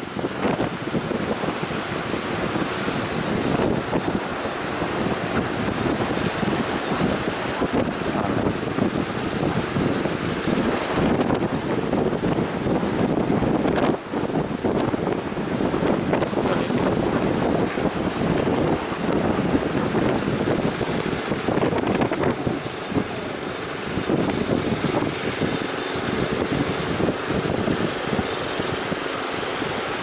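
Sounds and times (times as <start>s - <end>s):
speedboat engine running: 0.0s - 30.0s
strong wind: 0.0s - 30.0s
waves breaking: 0.0s - 30.0s.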